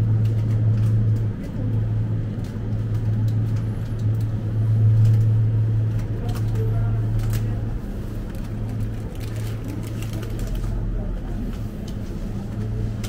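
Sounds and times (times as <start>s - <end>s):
low hum: 0.0s - 11.6s
faint background voices: 5.8s - 13.0s.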